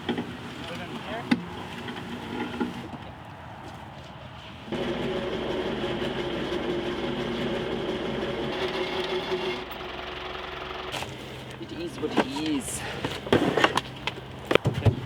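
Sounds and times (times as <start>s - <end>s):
small engine running: 4.7s - 13.3s.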